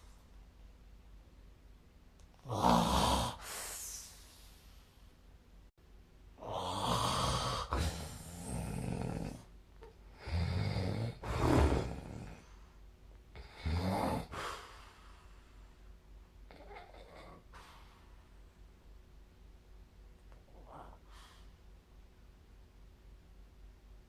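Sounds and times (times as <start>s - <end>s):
person snoring: 2.4s - 4.2s, 6.4s - 9.5s, 10.1s - 12.6s, 13.4s - 14.8s.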